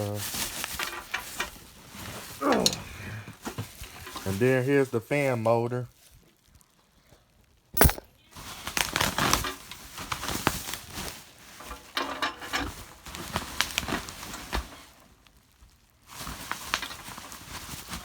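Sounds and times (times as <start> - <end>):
packaging rustling and crinkling: 0.0 - 2.6, 3.3 - 4.6, 7.8 - 18.0.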